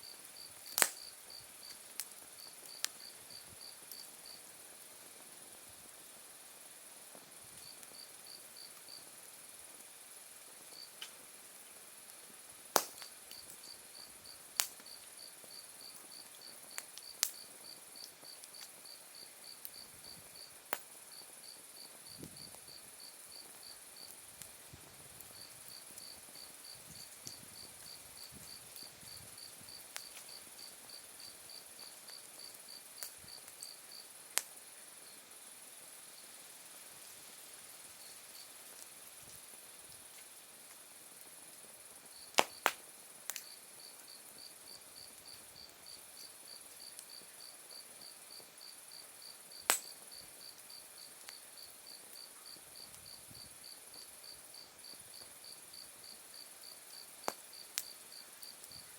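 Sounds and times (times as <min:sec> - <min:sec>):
firewood popping and cracking: 0:12.7 - 0:13.7.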